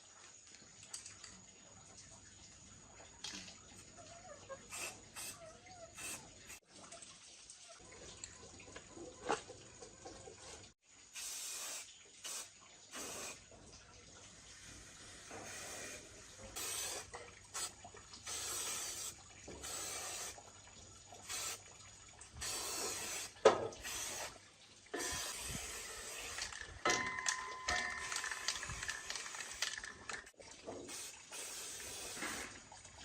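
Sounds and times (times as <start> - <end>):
hissing spray bursts: 11.1 - 13.4, 15.4 - 20.4, 21.2 - 21.6, 22.4 - 24.4, 25.0 - 26.5, 30.9 - 32.6
steady ringing tone: 26.9 - 29.4.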